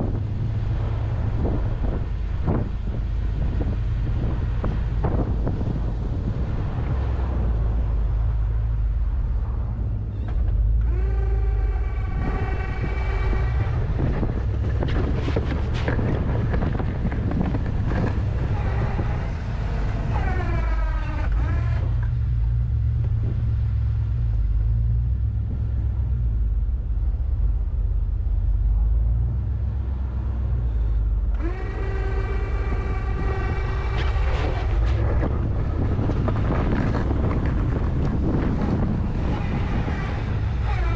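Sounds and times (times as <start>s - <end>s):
truck engine and road rumble: 0.0s - 40.9s
high squealing tones: 10.1s - 16.1s, 18.0s - 22.1s, 30.7s - 35.5s.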